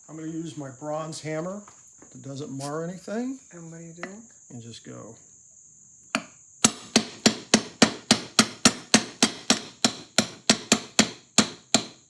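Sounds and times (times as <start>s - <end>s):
hammer tapping metal shaft: 6.1s - 11.9s.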